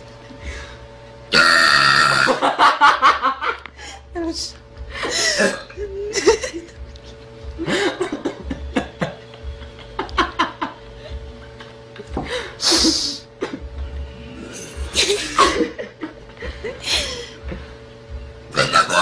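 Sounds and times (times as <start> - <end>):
faint steady hum: 0.0 - 19.0
people laughing: 2.3 - 3.6, 5.0 - 13.6, 14.9 - 17.4.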